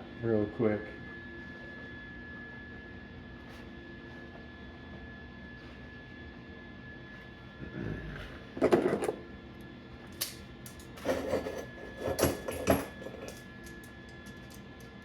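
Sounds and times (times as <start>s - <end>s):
metal pieces clanking: 10.2s - 13.4s.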